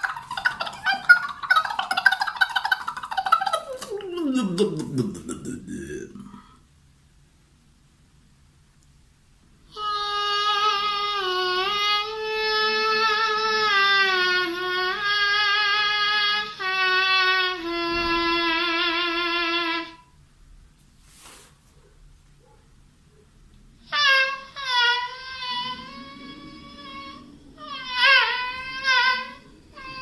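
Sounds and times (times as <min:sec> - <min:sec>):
man's high reedy vocal tone: 0:00.0 - 0:06.6.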